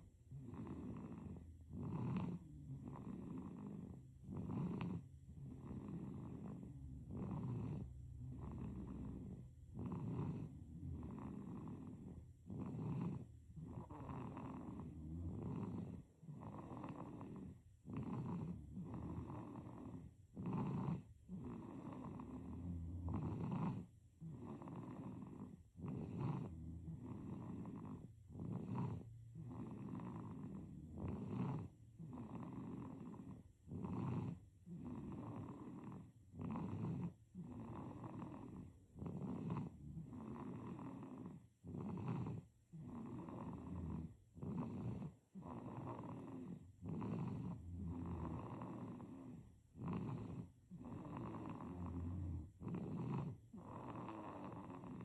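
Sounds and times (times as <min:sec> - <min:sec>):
baby snoring with rasping breaths: 0:00.0 - 0:55.0.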